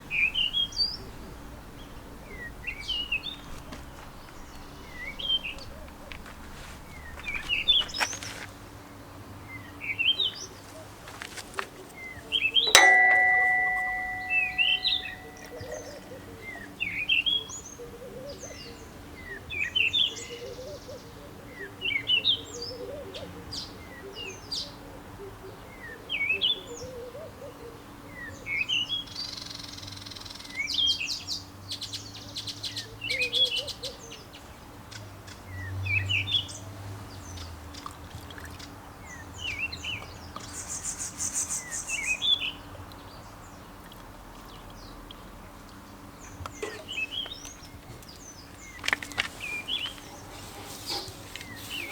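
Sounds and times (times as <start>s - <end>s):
birds chirping: 0.0s - 8.6s, 12.0s - 16.1s, 45.8s - 51.9s
metallic clang: 12.7s - 15.8s.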